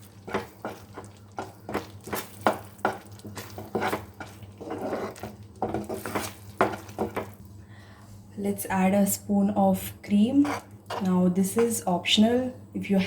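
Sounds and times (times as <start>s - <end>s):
spoon stirring sauce in pan: 0.0s - 7.4s.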